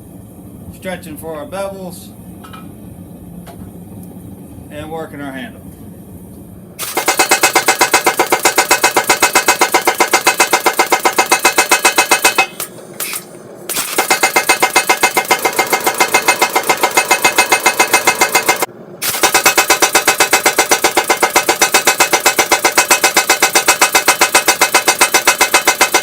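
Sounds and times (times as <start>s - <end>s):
power hammer pounding hot steel: 6.8s - 26.0s.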